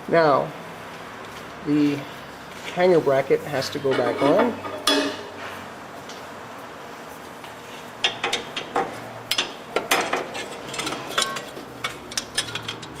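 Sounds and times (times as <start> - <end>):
metal tools clinking on exhaust: 3.6 - 5.5, 8.0 - 13.0.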